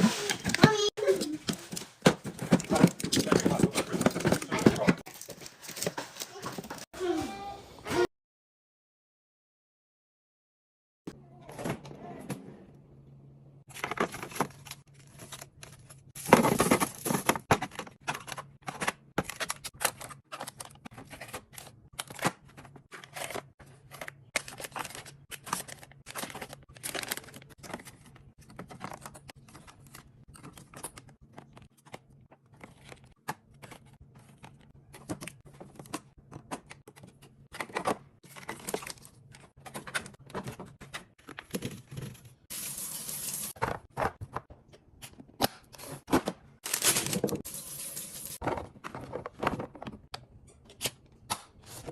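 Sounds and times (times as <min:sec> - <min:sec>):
packets crinkling and rustling: 0:00.0 - 0:06.9, 0:13.7 - 0:36.0, 0:46.6 - 0:47.6.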